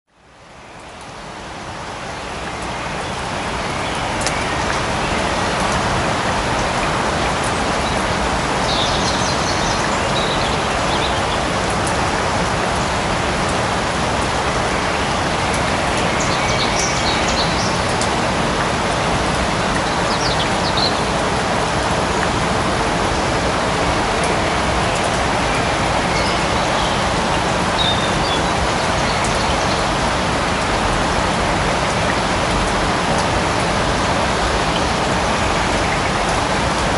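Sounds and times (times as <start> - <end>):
light rain falling: 0.1 - 36.9.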